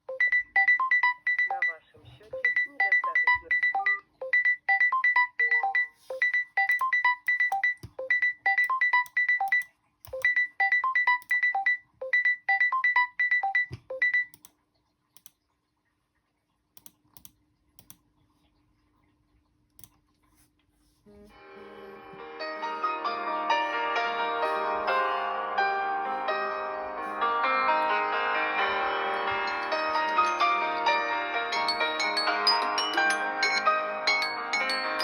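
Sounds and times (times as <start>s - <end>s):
electronic phone ringtone: 0.0s - 1.7s, 2.4s - 9.6s, 10.2s - 14.3s, 29.2s - 35.0s
faint clicks: 14.3s - 15.4s, 16.8s - 18.0s.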